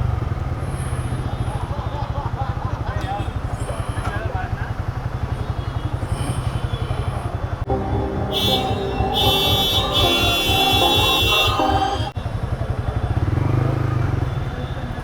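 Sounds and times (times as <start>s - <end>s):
vehicle horns honking: 5.5s - 12.2s.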